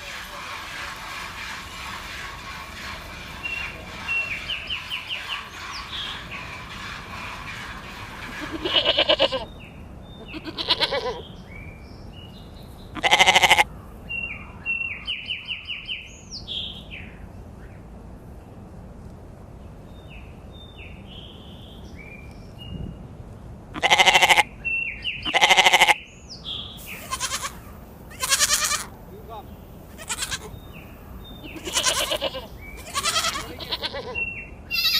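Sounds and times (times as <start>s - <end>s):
birds chirping: 0.0s - 17.8s, 23.8s - 34.9s
sheep bleating: 8.4s - 9.5s, 10.2s - 11.2s, 13.0s - 13.7s, 23.8s - 24.5s, 25.3s - 26.0s, 27.0s - 28.9s, 29.9s - 30.6s, 31.4s - 34.9s.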